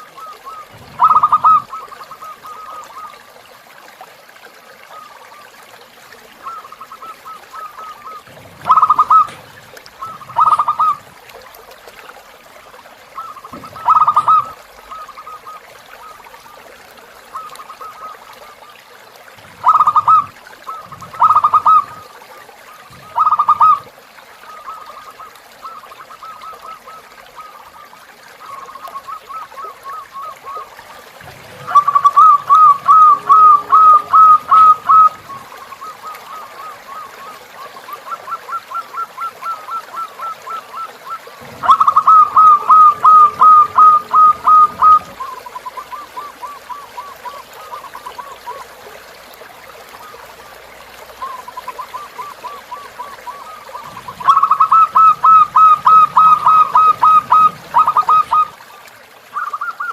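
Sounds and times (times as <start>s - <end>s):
river water trickling: 0.0s - 59.9s
dove calling short quick notes: 0.2s - 3.1s, 6.4s - 11.0s, 13.2s - 15.6s, 31.4s - 37.4s, 41.4s - 47.1s.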